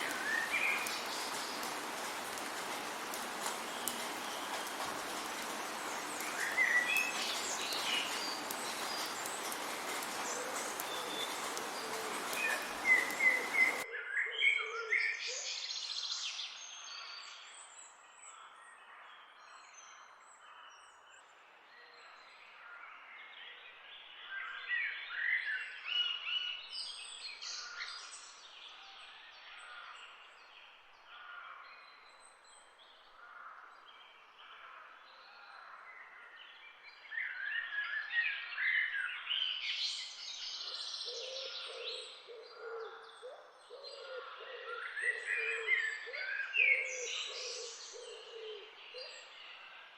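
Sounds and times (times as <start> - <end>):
rain hissing: 0.0 - 13.8
songbirds chirping: 0.0 - 49.9.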